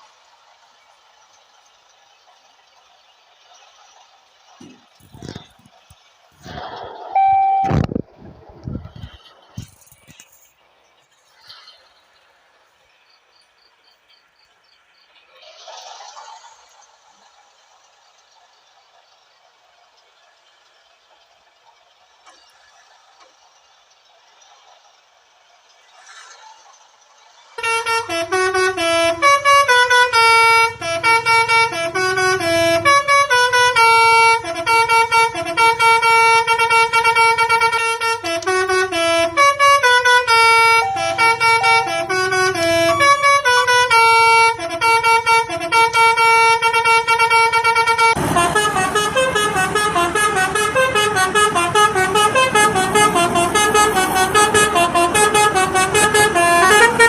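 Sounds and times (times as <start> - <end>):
rushing noise: 6.4 - 10.1
multi-tone musical horn: 27.6 - 57.0.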